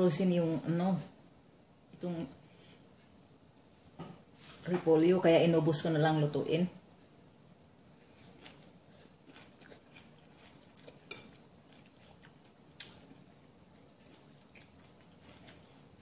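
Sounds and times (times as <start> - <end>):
quiet chewing: 8.0 - 16.0.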